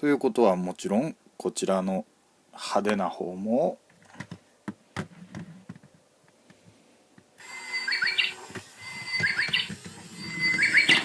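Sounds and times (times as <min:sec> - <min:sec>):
recorded bird song from toy speaker: 0:07.6 - 0:11.0.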